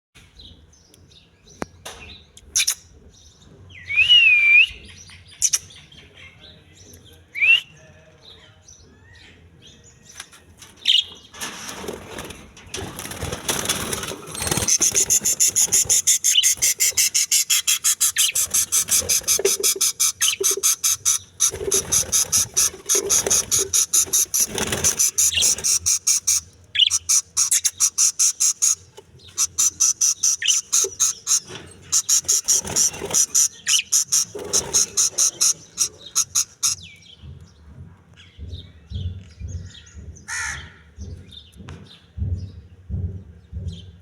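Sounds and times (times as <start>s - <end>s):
parrot chicks chirping: 12.1s - 37.2s.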